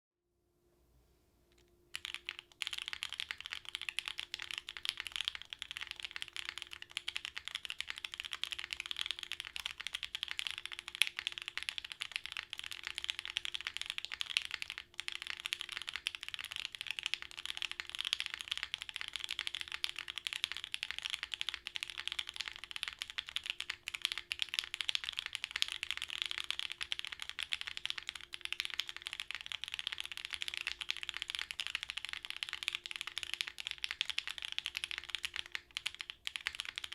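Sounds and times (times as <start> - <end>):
mechanical keyboard clacking: 1.9 - 36.9.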